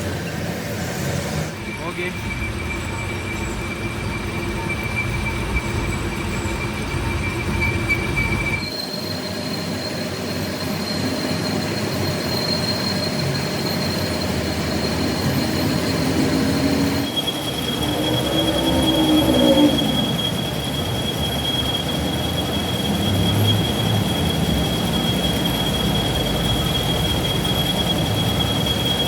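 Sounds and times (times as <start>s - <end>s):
cutting tool squealing: 0.0s - 29.0s
machine rumbling: 10.1s - 29.0s.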